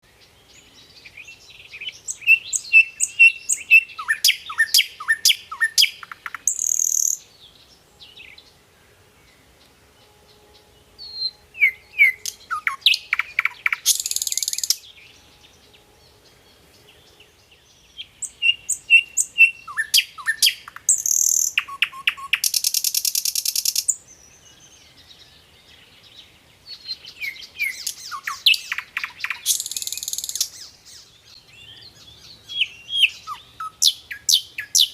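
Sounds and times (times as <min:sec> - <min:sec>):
bird singing with rasping buzz: 0:00.0 - 0:34.9.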